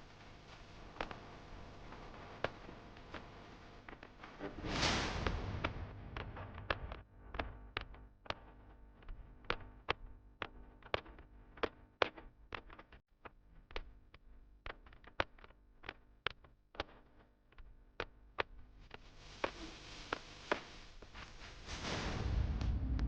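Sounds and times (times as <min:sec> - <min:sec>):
hiss: 0:19.1 - 0:22.4.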